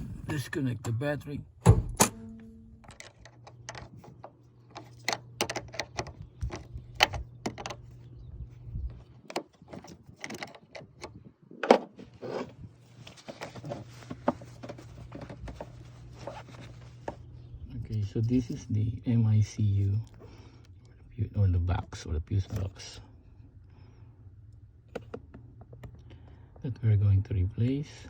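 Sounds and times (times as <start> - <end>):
low hum: 0.0 - 9.2, 12.1 - 28.0
clicks knocks and rattles of hand work: 1.7 - 8.0, 9.2 - 12.5.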